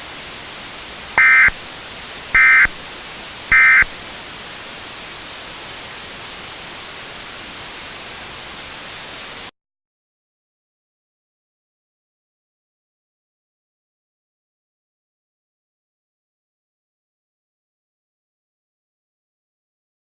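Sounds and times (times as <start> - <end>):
static hiss: 0.0 - 9.5
harsh digital data bursts: 1.2 - 1.6, 2.4 - 2.7, 3.5 - 3.9.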